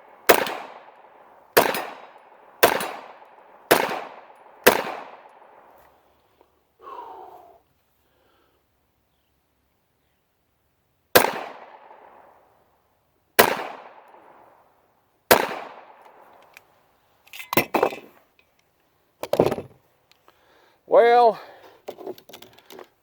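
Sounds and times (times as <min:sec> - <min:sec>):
gunshots with echo: 0:00.0 - 0:05.7, 0:11.2 - 0:12.3, 0:13.4 - 0:14.5, 0:15.3 - 0:16.0.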